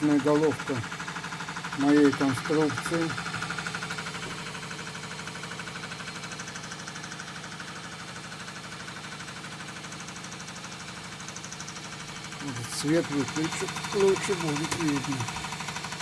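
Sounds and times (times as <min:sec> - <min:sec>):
milling machine cutting metal: 0:11.6 - 0:16.0.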